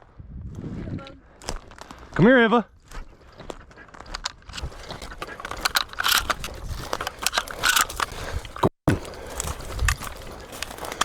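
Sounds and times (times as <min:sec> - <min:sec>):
footsteps on gravel: 0:02.8 - 0:11.0
rustling: 0:04.5 - 0:11.0.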